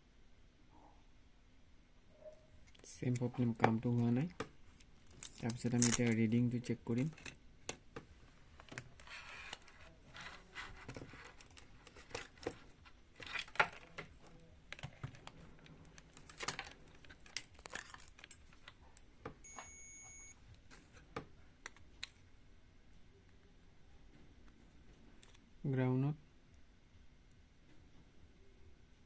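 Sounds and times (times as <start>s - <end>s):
small tools clicking and rustling: 7.0s - 7.4s, 8.6s - 18.8s
short electronic beep: 19.4s - 20.4s.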